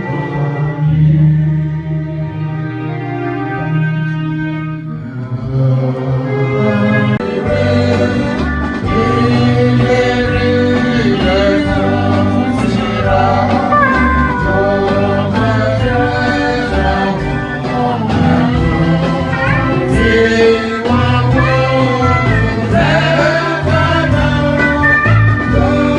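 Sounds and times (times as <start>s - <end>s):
worship singing with instruments: 0.0s - 25.9s
stepping bass line: 13.6s - 15.8s.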